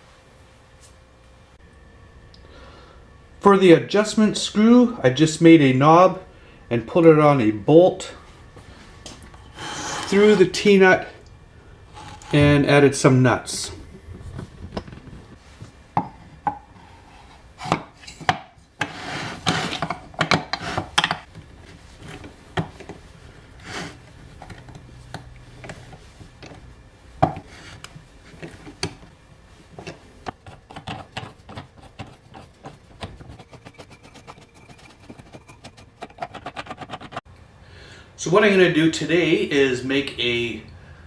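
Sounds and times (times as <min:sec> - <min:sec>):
wooden parts knocking and rubbing: 0:27.2 - 0:29.1, 0:29.7 - 0:37.2.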